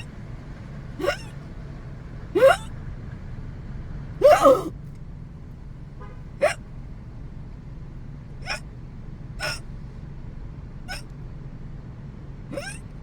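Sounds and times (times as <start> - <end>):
woman hiccuping: 1.0 - 1.3, 2.4 - 2.7, 4.2 - 4.7, 8.4 - 8.6, 9.4 - 9.6, 12.5 - 12.8.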